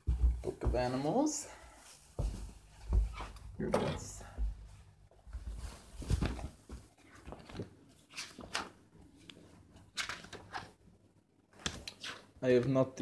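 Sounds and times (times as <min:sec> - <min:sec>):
book pages rustling: 0:05.2 - 0:10.8.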